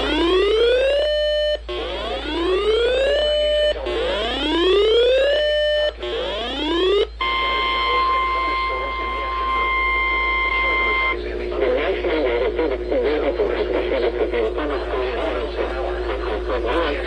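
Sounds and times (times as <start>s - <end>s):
steady high alarm tone: 0.0s - 17.0s
rising whoop alarm tone: 4.0s - 11.2s.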